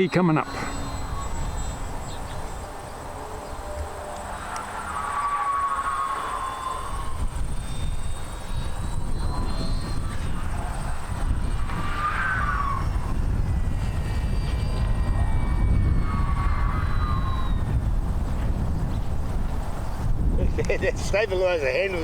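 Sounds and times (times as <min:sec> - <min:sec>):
glider whistling past: 0:00.0 - 0:18.8
low rumble of wind: 0:00.0 - 0:22.0.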